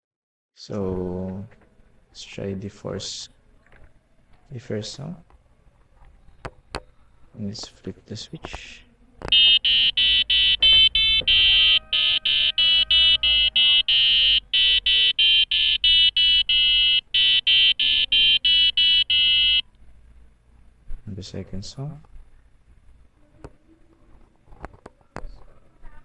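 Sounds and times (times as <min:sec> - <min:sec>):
piezo buzzer beeping melody: 0:09.3 - 0:19.6.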